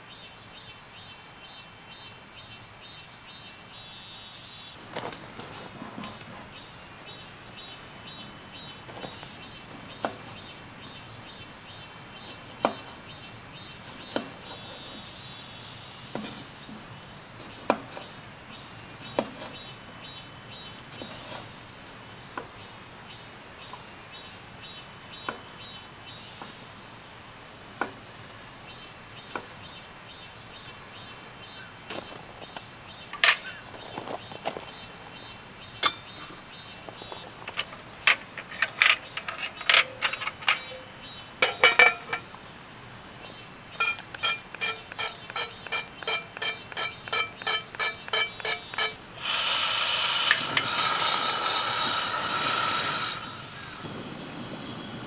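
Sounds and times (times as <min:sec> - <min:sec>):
faint insect chirping: 0:00.0 - 0:55.0
steady hiss: 0:04.2 - 0:55.0
handling clicks and knocks: 0:31.9 - 0:34.9, 0:35.6 - 0:42.4, 0:43.2 - 0:49.2
sharp mechanical clicks: 0:43.3 - 0:50.8.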